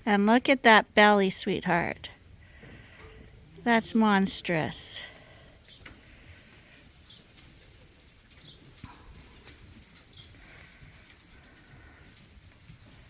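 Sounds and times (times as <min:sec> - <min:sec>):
sheep shuffling in bedding: 0:04.4 - 0:13.0.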